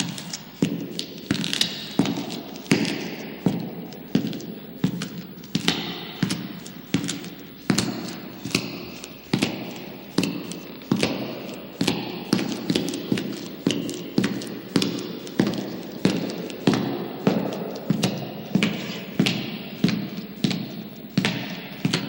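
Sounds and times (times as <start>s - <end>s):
heavy footsteps echoing in tunnel: 0.0s - 22.0s.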